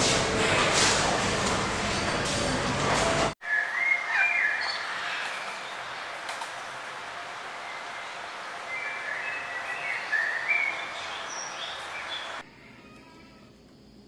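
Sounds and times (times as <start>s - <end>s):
birds chirping: 3.4s - 12.4s
outdoor background hiss: 3.4s - 14.0s.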